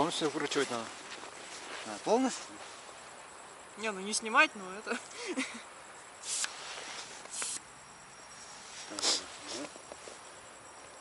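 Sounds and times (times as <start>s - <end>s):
air hissing from tyre valve: 6.2s - 7.7s, 8.6s - 9.8s.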